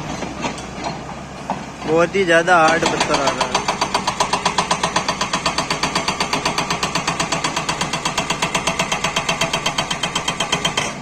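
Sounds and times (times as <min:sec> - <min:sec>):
excavator engine: 0:00.0 - 0:11.0
hydraulic breaker hammering rock: 0:02.4 - 0:11.0.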